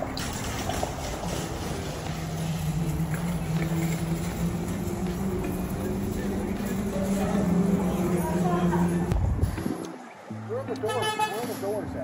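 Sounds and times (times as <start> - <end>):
vehicle engine running: 0.0 - 9.4.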